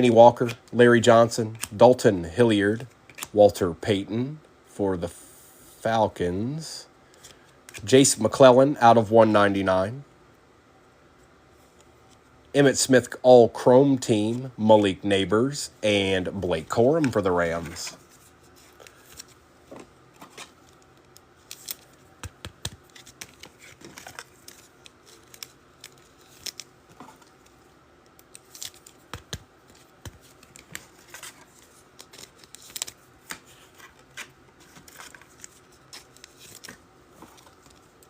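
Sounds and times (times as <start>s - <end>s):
trading cards clicking and rustling: 0.3s - 1.9s, 16.7s - 38.0s.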